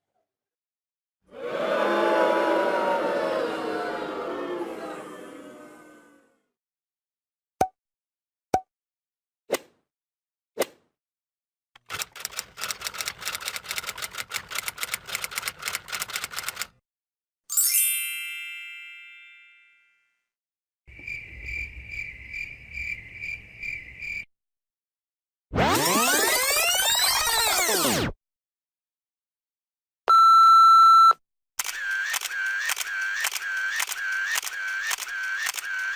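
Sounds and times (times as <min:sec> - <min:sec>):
rapid clicking: 0:11.8 - 0:16.7
bell ding: 0:17.6 - 0:20.1.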